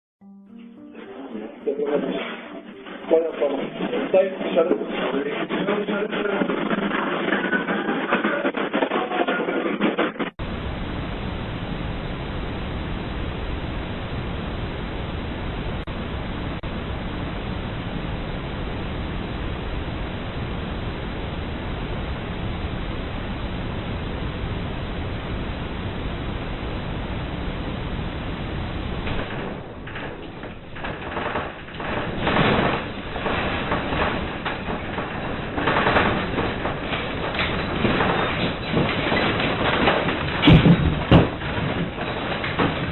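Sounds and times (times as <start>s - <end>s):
steady hiss: 10.4s - 38.6s.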